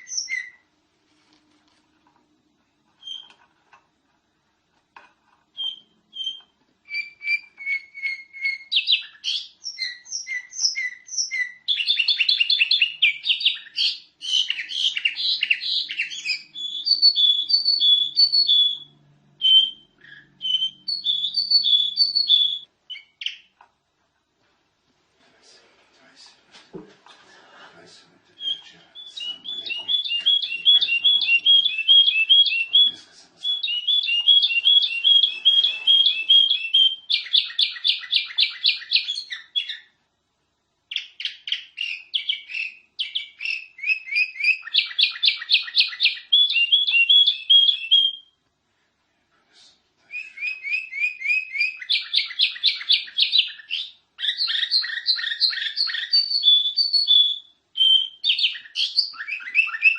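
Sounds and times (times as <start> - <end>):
canary singing trills: 0.0 - 0.7, 3.0 - 3.4, 5.6 - 23.6, 28.3 - 40.0, 40.9 - 48.4, 50.1 - 59.9.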